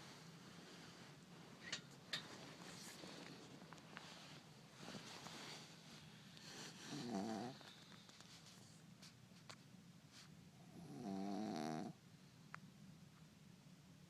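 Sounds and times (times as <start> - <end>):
dog snoring: 6.4 - 7.8, 10.6 - 12.0.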